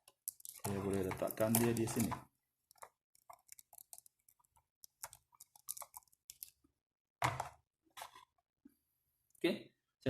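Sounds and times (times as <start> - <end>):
small plastic clicks and crackles: 0.0 - 6.6.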